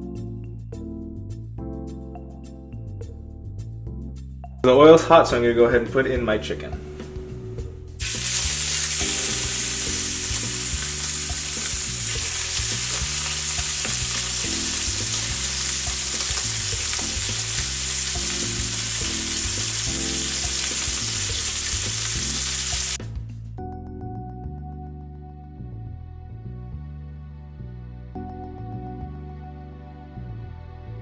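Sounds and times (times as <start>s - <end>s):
chicken sizzling in hot oil: 8.0s - 23.0s.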